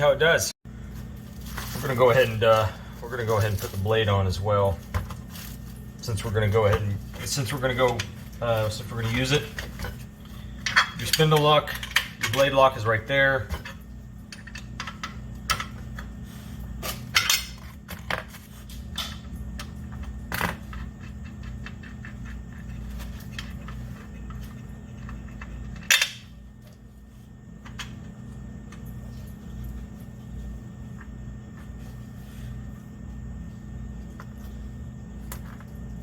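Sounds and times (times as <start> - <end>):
steady low hum: 0.0 - 36.0
metal parts clicking and clanking: 10.6 - 15.8.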